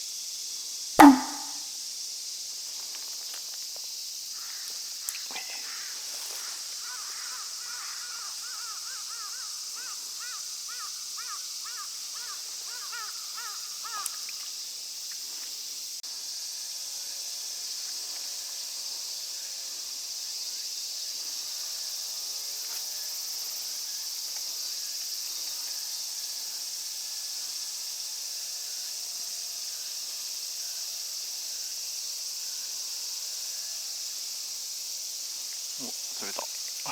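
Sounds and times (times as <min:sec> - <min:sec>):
insects buzzing: 0:00.0 - 0:36.9
bird calling in quick notes: 0:01.0 - 0:01.6
soft wavering bird calls: 0:01.0 - 0:01.6.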